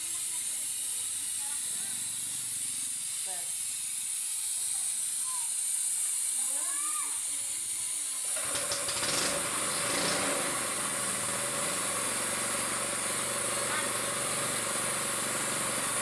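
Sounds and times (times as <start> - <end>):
steady hiss: 0.0 - 8.9.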